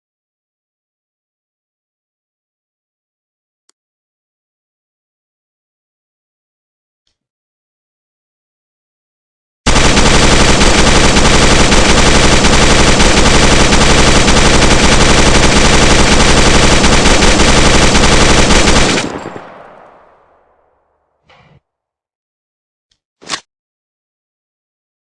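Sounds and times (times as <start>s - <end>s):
machine gun firing full auto: 9.7s - 20.3s
gunfire echo: 9.7s - 20.4s.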